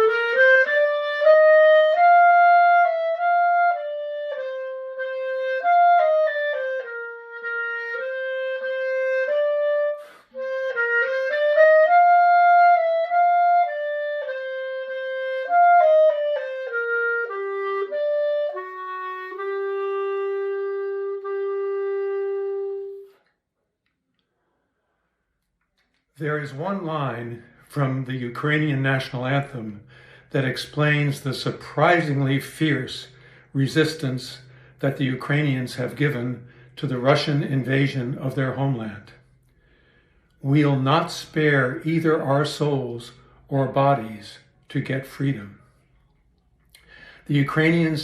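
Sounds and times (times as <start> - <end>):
solo instrumental melody: 0.0 - 23.3.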